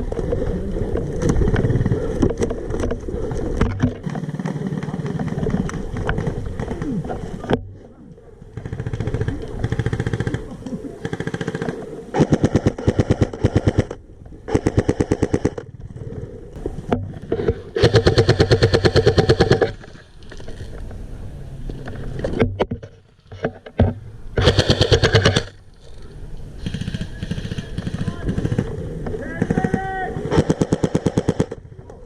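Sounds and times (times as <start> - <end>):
airsoft gun firing bursts: 8.6 - 15.6, 17.8 - 19.8, 24.4 - 25.6, 26.6 - 28.8, 29.4 - 31.6.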